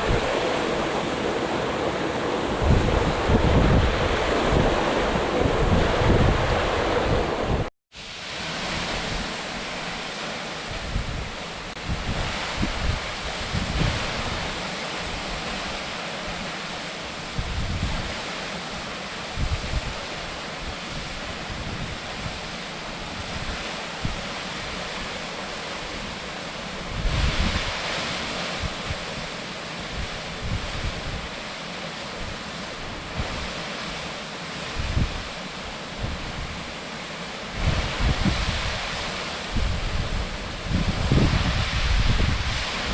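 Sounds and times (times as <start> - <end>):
wind gusting on microphone: 0.0 - 9.6, 10.7 - 15.3, 17.2 - 18.2, 19.3 - 25.2, 25.9 - 31.4, 32.2 - 33.6, 34.6 - 36.7, 37.5 - 42.9
waterfall roaring: 0.0 - 17.2.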